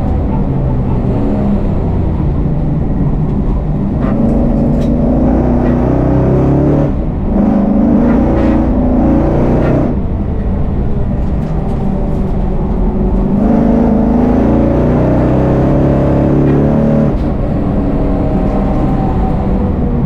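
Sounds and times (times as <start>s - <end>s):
race car engine accelerating hard: 0.0s - 20.0s.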